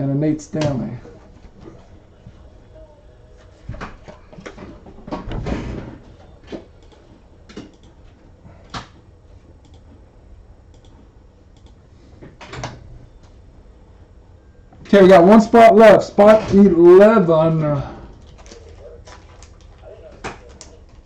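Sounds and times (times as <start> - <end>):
sharp clicks: 10.7 - 11.8
cards and packaging rustling: 18.2 - 21.0.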